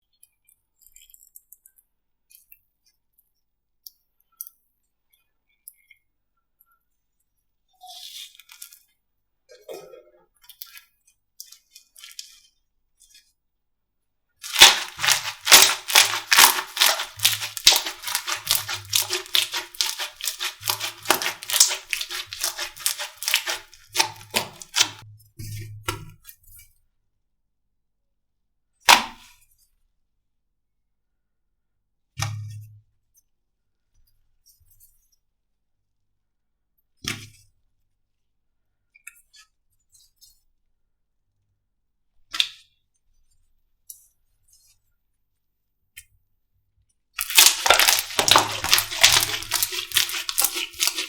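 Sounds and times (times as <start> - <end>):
slime crackling air pops: 14.4 - 25.0, 47.2 - 51.0
slime sticky rustles: 14.4 - 25.0, 47.2 - 51.0.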